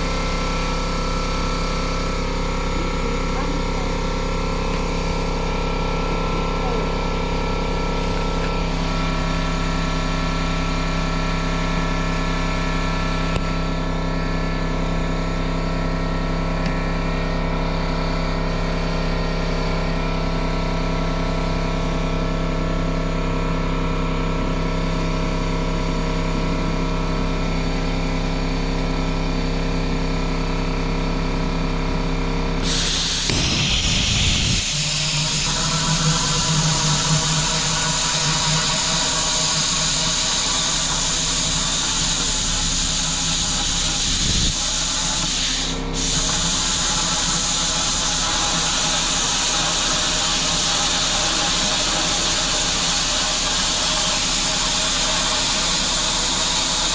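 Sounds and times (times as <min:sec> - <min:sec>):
machine droning: 0:00.0 - 0:56.9
loud hiss of rushing air: 0:32.6 - 0:56.9.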